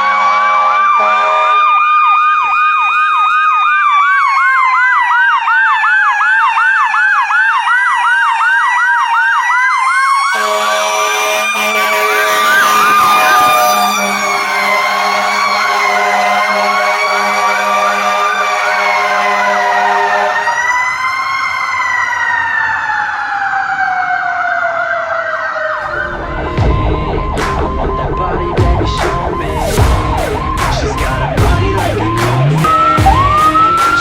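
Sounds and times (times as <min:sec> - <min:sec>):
electronic siren yelp: 0:00.0 - 0:34.0
mechanical siren wailing: 0:00.0 - 0:34.0
steady low horn-like tone: 0:10.4 - 0:20.5
low rumble: 0:25.8 - 0:33.8.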